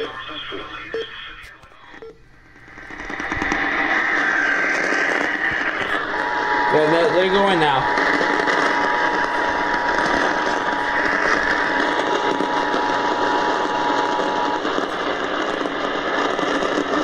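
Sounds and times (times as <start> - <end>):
radio static hiss: 0.0 - 17.0.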